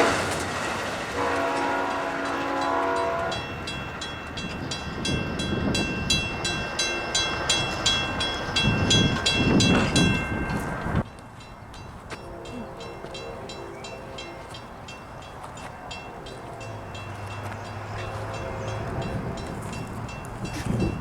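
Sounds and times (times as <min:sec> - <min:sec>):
train horn: 0:00.0 - 0:03.6, 0:12.2 - 0:20.9
gusty wind rumble: 0:00.0 - 0:21.0.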